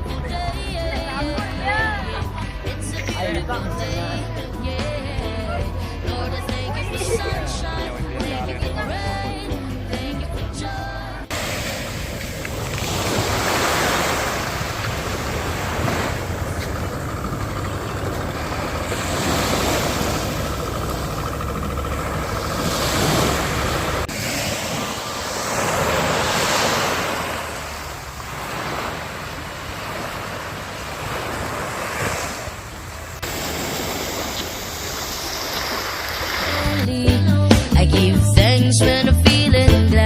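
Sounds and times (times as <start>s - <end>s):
wind rumbling on microphone: 11.3s - 36.4s
sea waves washing onto shore: 11.3s - 36.9s.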